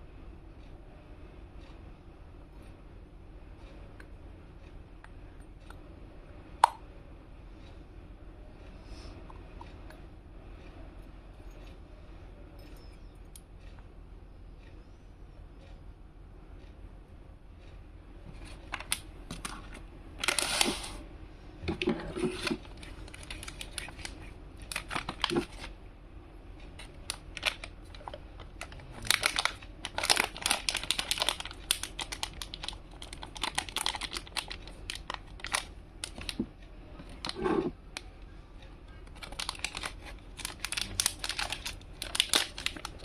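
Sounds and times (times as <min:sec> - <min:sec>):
plastic packaging crinkling: 0:18.4 - 0:21.0, 0:21.7 - 0:25.7, 0:26.8 - 0:37.7, 0:39.1 - 0:43.0.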